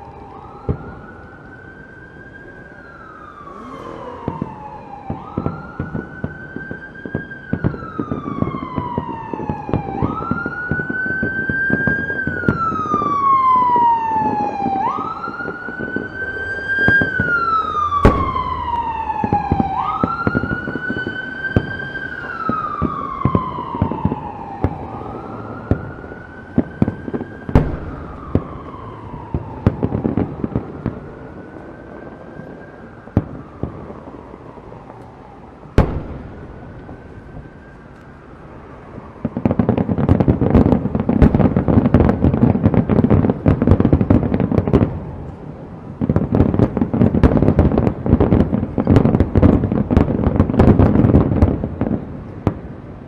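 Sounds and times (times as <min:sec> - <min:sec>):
siren wailing: 0:00.0 - 0:53.0
sharp firework bangs: 0:03.4 - 0:06.4, 0:16.8 - 0:25.0, 0:26.6 - 0:31.0, 0:35.8 - 0:37.6
firework pops and crackles: 0:03.8 - 0:25.0, 0:25.6 - 0:52.8.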